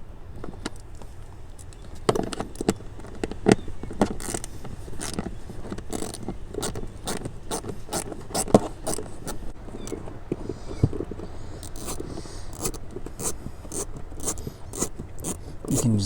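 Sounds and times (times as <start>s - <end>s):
socket ratchet clicking: 11.6s - 15.4s.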